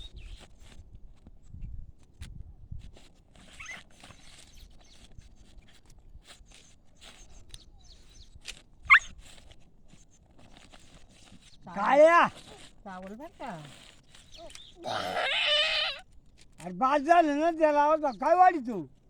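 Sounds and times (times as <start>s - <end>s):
child and dog scuffling: 12.3s - 16.1s
sharp high-pitched cry: 14.4s - 16.0s.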